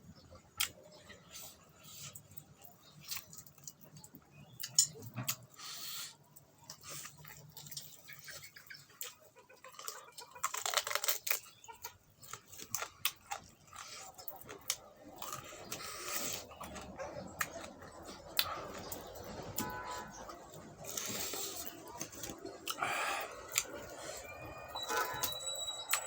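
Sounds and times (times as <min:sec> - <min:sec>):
person chewing with wet smacks: 0:00.3 - 0:25.4.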